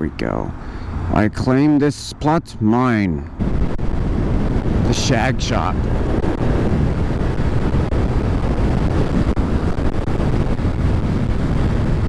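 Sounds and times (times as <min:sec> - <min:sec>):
wind rush on microphone: 0:00.0 - 0:12.0
motorcycle engine: 0:05.8 - 0:12.0.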